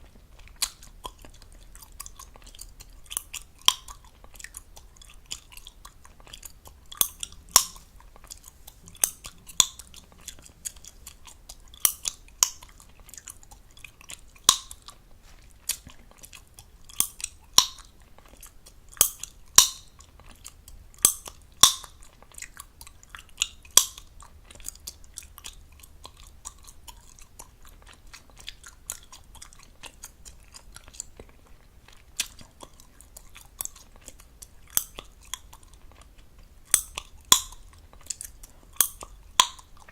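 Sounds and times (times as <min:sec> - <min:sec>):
gum chewing with wet smacking: 0:00.0 - 0:39.9
gum snapping pops: 0:06.9 - 0:12.8, 0:14.4 - 0:15.0, 0:16.9 - 0:17.9, 0:19.0 - 0:19.9, 0:21.0 - 0:22.0, 0:23.4 - 0:24.1, 0:36.7 - 0:39.7.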